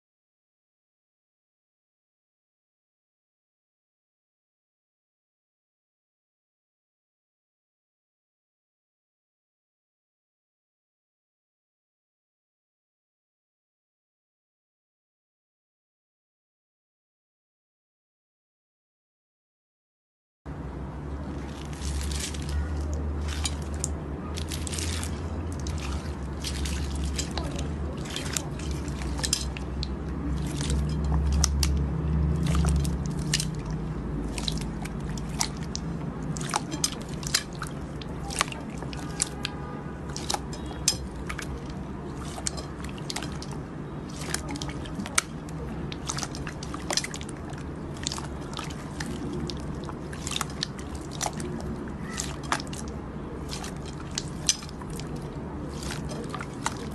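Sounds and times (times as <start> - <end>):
slime squishing with wet clicks: 21.2 - 56.9.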